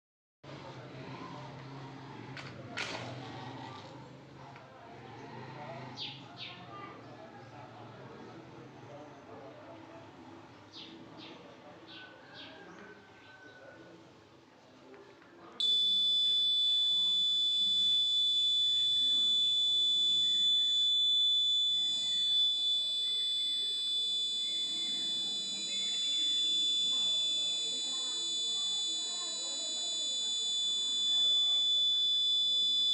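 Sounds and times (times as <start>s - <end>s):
fire alarm tone: 15.6s - 32.9s.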